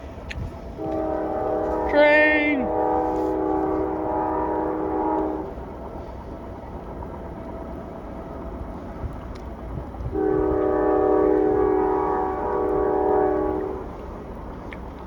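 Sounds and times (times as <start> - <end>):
low rumble of passing train: 0.0 - 15.0
train horn chord: 0.8 - 5.6, 10.1 - 14.3.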